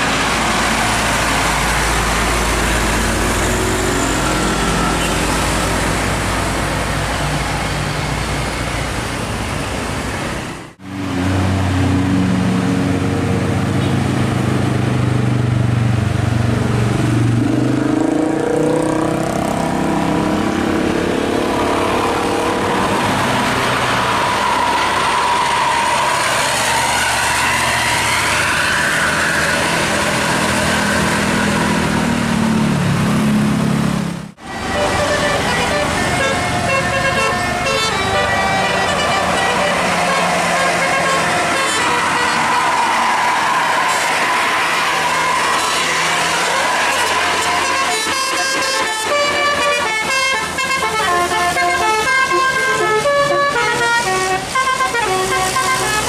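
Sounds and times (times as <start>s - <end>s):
roadside traffic: 0.0s - 56.0s
large vehicle engine passing: 10.4s - 36.7s, 37.4s - 48.1s.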